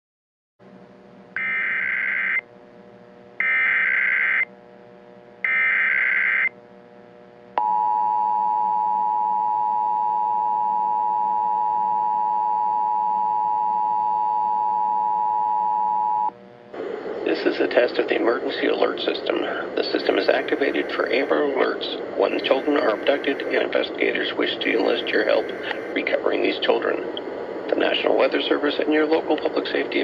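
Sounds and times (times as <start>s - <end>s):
digital data bursts: 17.3s - 30.0s.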